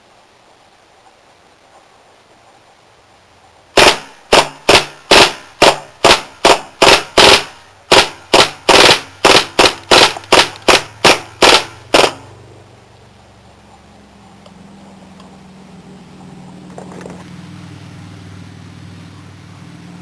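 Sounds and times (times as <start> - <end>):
airsoft gun shots: 3.8 - 12.3.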